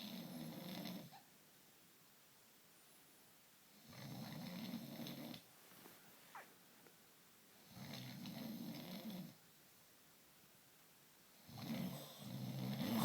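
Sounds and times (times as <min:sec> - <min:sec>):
man snoring: 0:11.6 - 0:13.0.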